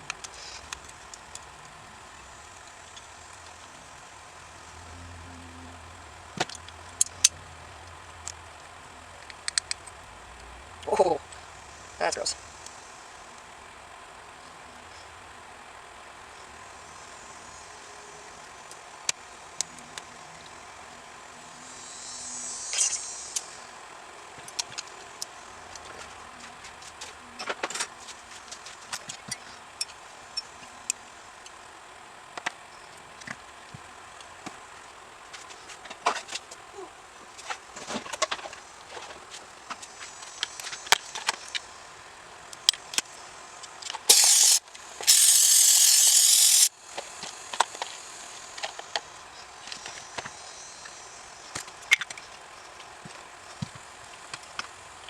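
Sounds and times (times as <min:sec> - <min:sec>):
hissing spray bursts: 0:44.1 - 0:46.7.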